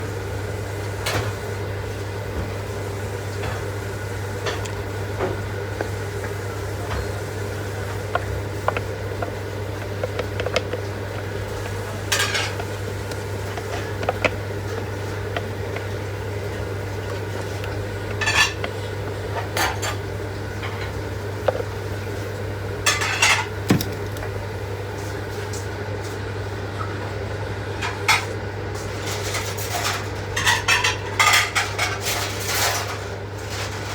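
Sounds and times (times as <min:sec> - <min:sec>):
utensils and dishes clinking: 0:09.9 - 0:12.8, 0:16.5 - 0:21.0, 0:29.0 - 0:33.9.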